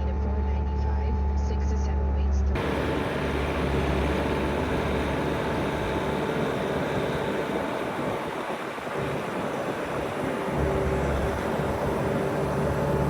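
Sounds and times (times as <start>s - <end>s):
diesel engine drone: 2.6s - 13.0s.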